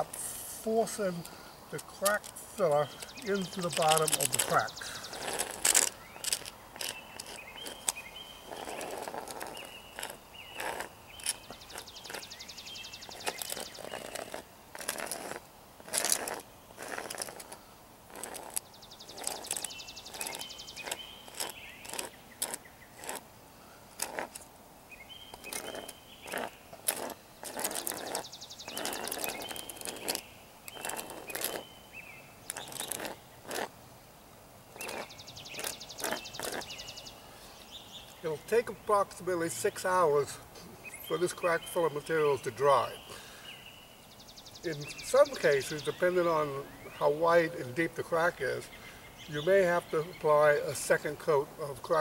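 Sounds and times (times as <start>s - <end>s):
board scraping on asphalt: 0.0s - 23.3s, 23.9s - 24.5s, 25.1s - 33.7s, 34.8s - 39.9s.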